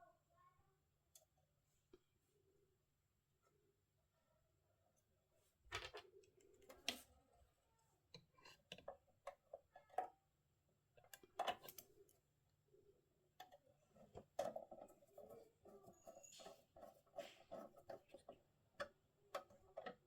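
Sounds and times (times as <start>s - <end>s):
small parts clicking and knocking: 11.0s - 12.2s.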